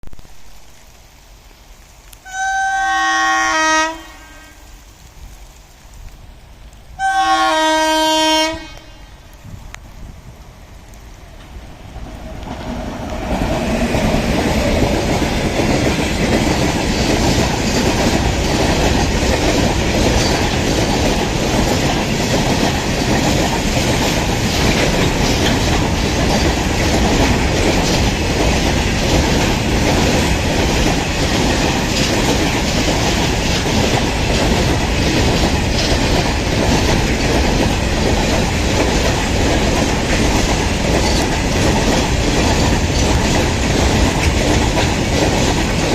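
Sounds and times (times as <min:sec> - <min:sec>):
train passing close by: 0:02.2 - 0:45.9
wagon wheels clattering over rail joints: 0:12.5 - 0:45.9.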